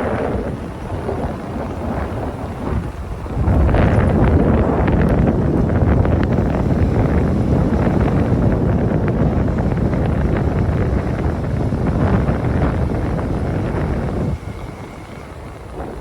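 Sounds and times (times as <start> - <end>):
motorcycle running: 0.0 - 16.0
wind buffeting microphone: 0.0 - 16.0.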